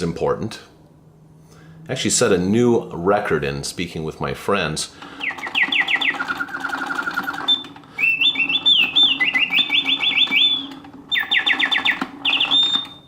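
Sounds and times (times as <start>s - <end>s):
faint clockwork hum: 0.0s - 13.0s
mechanical birdsong whistle: 5.1s - 13.0s.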